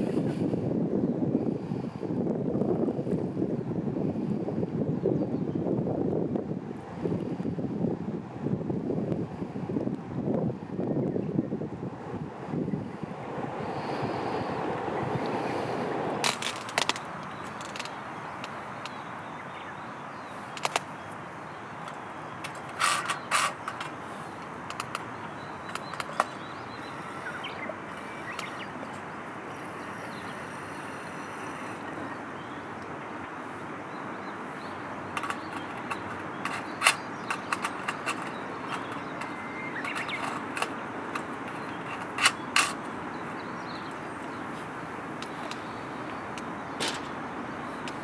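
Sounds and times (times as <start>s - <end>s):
sharp clicks and knocks: 16.2s - 19.0s, 20.6s - 20.9s, 21.8s - 26.4s, 35.1s - 42.9s, 46.4s - 47.2s.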